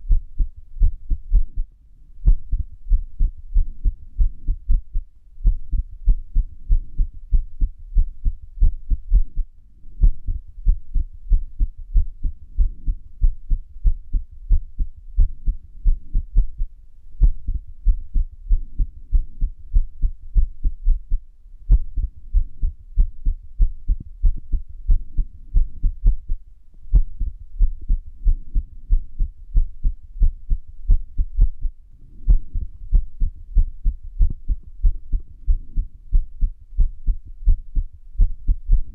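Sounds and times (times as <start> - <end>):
irregular heartbeat thumps: 0.0 - 38.9.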